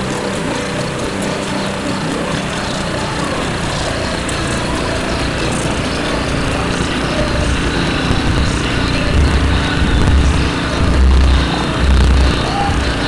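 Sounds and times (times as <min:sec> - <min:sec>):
motor running: 0:00.0 - 0:13.0
low rumble: 0:02.7 - 0:13.0.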